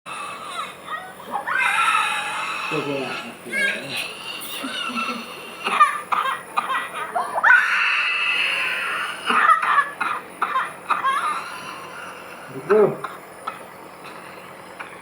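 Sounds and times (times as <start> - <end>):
baby crying: 0.1 - 9.9, 10.5 - 12.2
baby coughing: 2.7 - 7.4, 8.9 - 11.7, 13.0 - 13.7.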